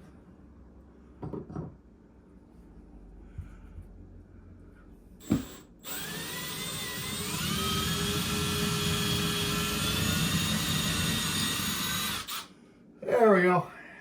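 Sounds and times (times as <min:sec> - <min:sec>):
electric drill whining: 0:05.2 - 0:12.5.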